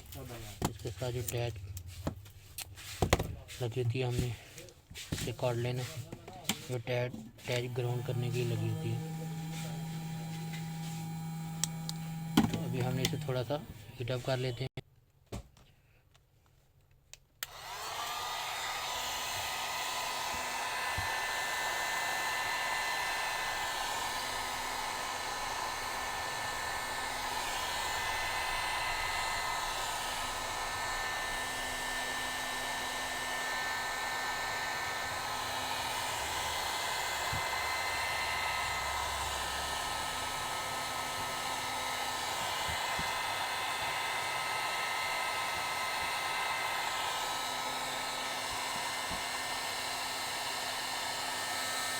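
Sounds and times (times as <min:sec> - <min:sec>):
hot air gun blowing: 0:07.4 - 0:14.4, 0:17.4 - 0:51.9.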